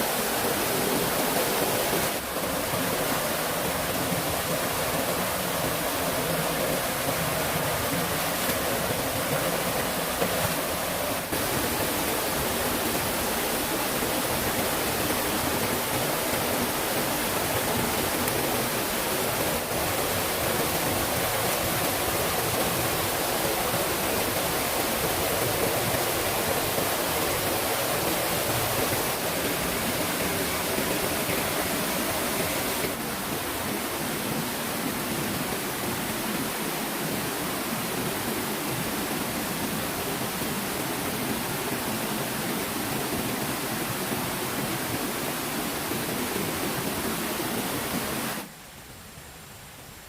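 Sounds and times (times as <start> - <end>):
stream water rushing: 0.0 - 50.0.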